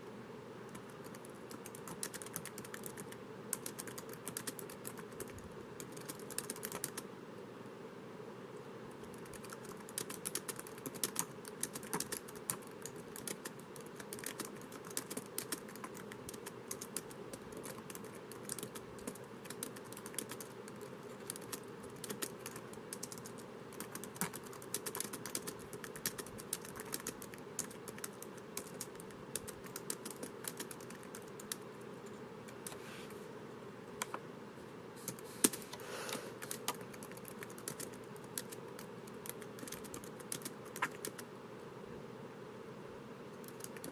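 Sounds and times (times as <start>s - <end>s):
typing on laptop keyboard: 0.7s - 7.0s, 9.0s - 31.6s, 36.4s - 41.3s, 43.4s - 43.9s.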